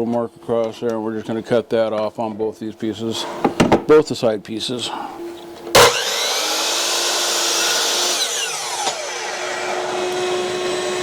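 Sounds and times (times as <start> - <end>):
miter saw cutting wood: 5.7 - 11.0.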